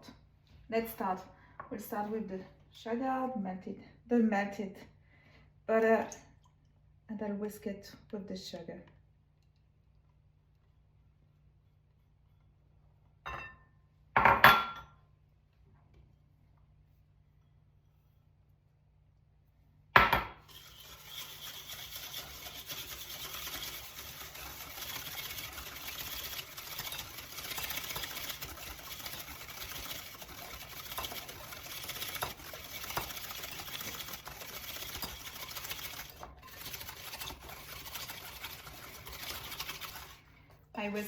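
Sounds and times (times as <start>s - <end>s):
whisk scraping against bowl: 20.5s - 40.4s.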